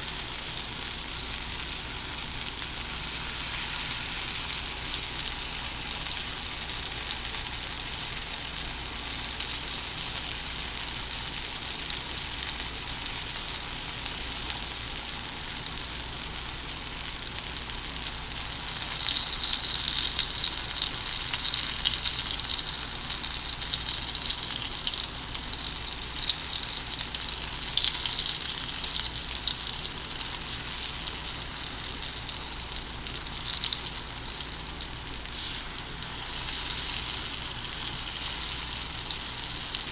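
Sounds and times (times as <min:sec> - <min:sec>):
food deep-frying in oil: 0:00.0 - 0:39.9.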